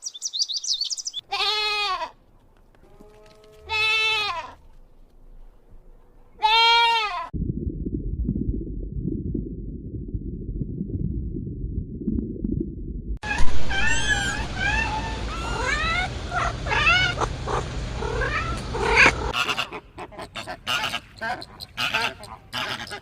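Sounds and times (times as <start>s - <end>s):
muffled low sound: 7.4s - 13.7s.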